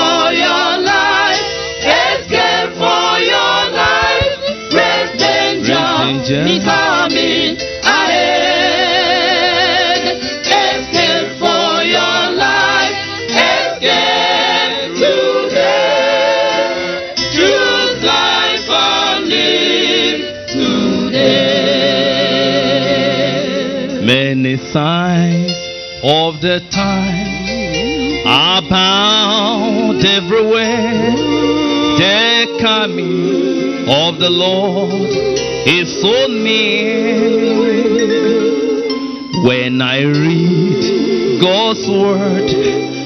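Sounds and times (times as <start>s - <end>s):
choir singing gospel song: 0.0s - 24.1s, 28.2s - 43.0s.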